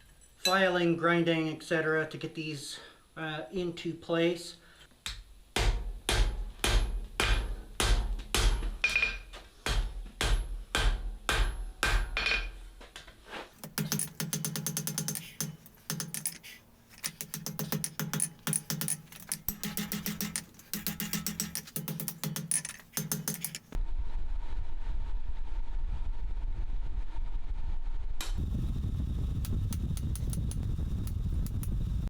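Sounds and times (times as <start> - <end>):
hammer blows on steel: 13.6 - 23.8
machine running: 13.6 - 23.8.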